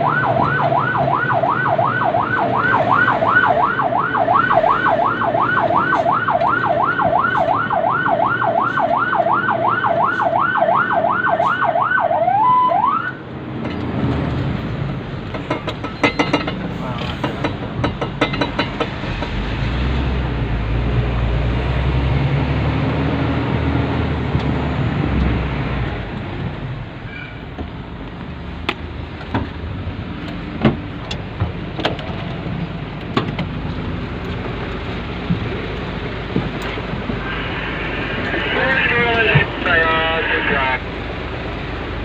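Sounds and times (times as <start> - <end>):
truck engine and road noise: 0.0 - 42.0
sharp knocks and rattles: 15.2 - 19.5.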